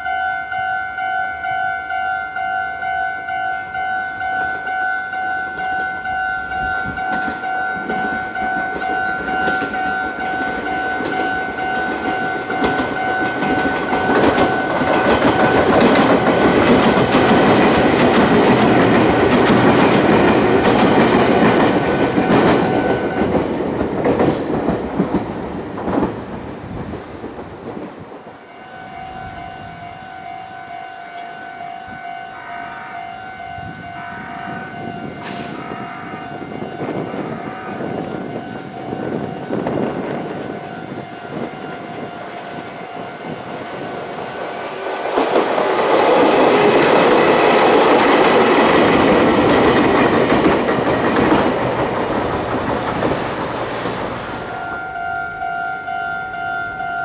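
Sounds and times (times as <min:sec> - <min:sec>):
level crossing bell ringing: 0:00.0 - 0:15.7, 0:28.5 - 0:35.2, 0:54.5 - 0:57.0
train wheels clacking over joints: 0:07.0 - 0:26.4, 0:44.0 - 0:54.6.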